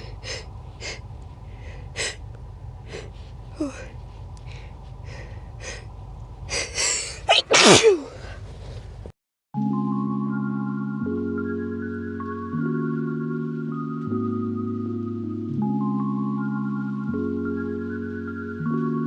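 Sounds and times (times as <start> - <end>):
loud sneeze: 7.2 - 8.2.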